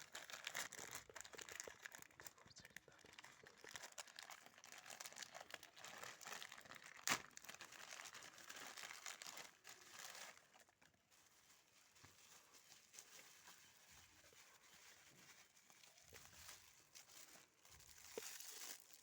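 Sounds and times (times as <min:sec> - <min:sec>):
packaging crinkling: 0:00.0 - 0:19.0.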